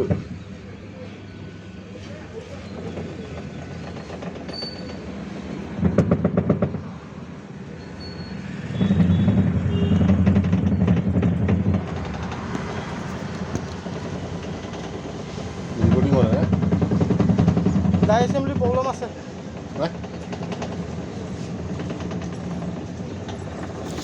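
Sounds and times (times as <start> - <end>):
washing machine rattling: 2.4 - 5.8, 9.0 - 24.0.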